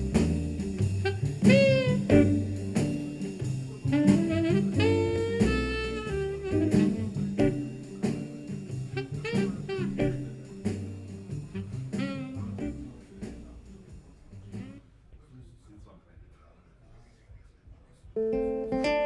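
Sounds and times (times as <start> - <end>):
bass and drums: 0.0 - 14.8
jazz saxophone: 0.0 - 14.8.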